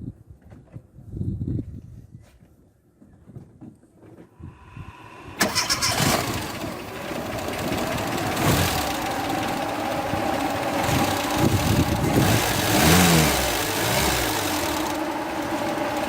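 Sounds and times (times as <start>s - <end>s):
car engine starting and running: 4.8s - 16.0s.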